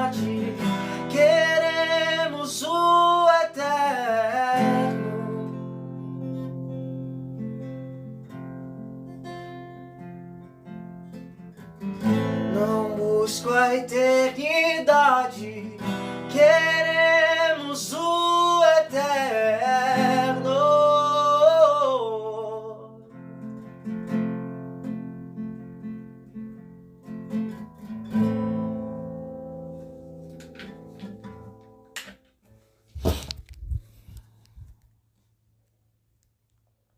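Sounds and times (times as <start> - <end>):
person singing: 0.0 - 5.7, 12.5 - 23.0
acoustic guitar chords: 0.0 - 32.2.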